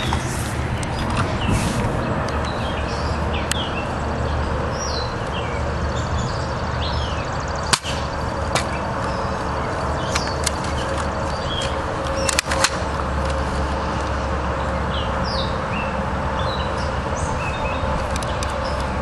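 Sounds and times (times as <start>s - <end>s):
birds chirping: 0.0s - 19.0s
outdoor background noise: 0.0s - 19.0s
airsoft rifle shot crack: 7.7s - 8.7s.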